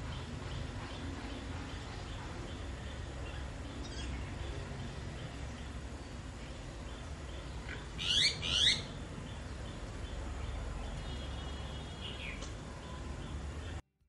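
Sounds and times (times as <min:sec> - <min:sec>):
animal chirping calls: 0:07.7 - 0:08.9.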